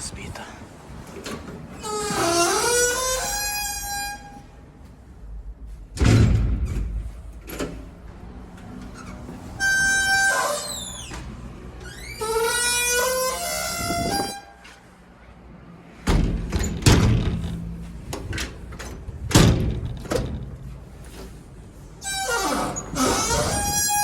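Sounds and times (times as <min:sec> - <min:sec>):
iron door hinges creaking: 0:01.2 - 0:04.5, 0:08.7 - 0:14.4, 0:16.1 - 0:20.8, 0:22.0 - 0:24.0.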